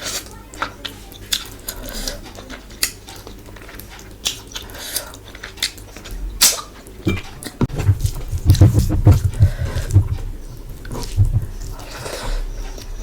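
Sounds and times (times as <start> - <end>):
loud low chewing thumps: 7.2 - 13.0.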